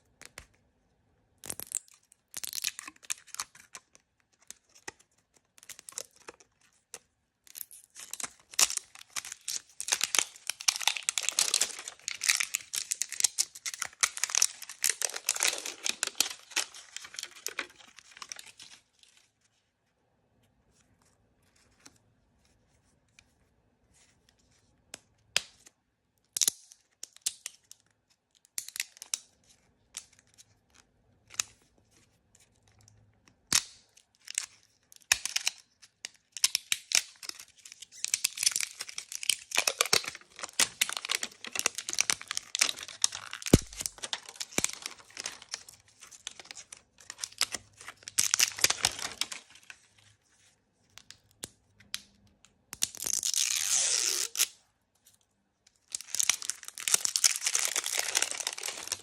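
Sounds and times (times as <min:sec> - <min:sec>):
plastic packaging crinkling: 0:07.5 - 0:19.2, 0:36.4 - 0:50.1, 0:55.8 - 0:59.0.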